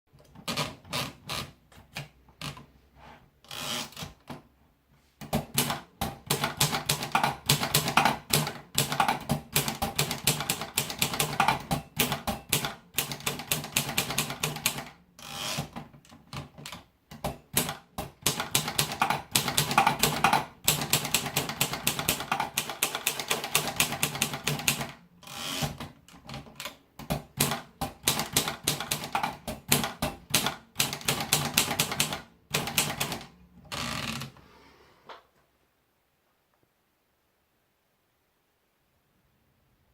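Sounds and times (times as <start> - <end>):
manual typewriter key strikes: 5.3 - 14.9, 16.6 - 25.0, 25.6 - 33.3.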